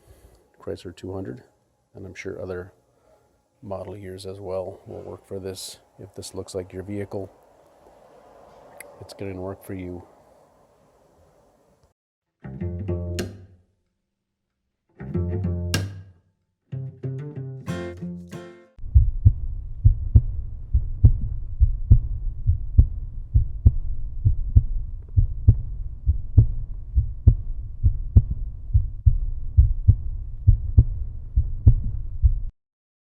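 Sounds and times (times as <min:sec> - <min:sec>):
bass-heavy beat: 0:18.8 - 0:32.5.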